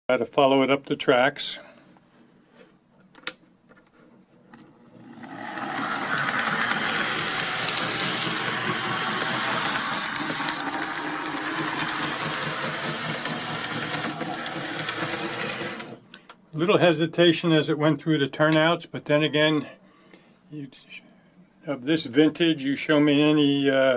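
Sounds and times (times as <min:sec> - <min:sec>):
model train motor whirring: 0:05.0 - 0:16.0
wheels clicking over rails: 0:05.0 - 0:16.0.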